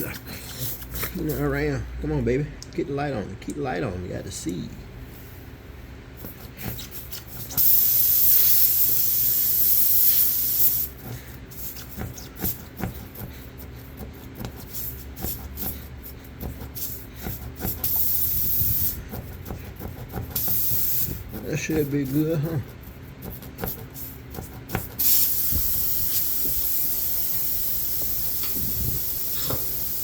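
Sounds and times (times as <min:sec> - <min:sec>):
aerosol spray hissing: 0:07.6 - 0:10.9, 0:17.8 - 0:19.0, 0:20.4 - 0:22.2, 0:25.0 - 0:30.0.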